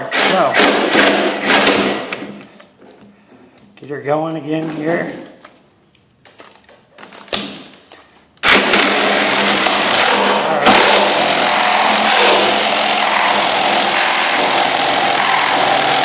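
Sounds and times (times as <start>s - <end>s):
reciprocating saw cutting board: 10.6s - 16.0s.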